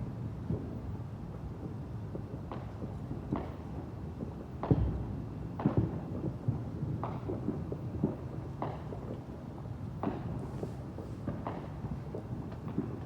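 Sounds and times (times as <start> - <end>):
small fireworks pops: 0.0 - 13.0
fireworks booming bangs: 4.6 - 9.3, 10.0 - 13.0.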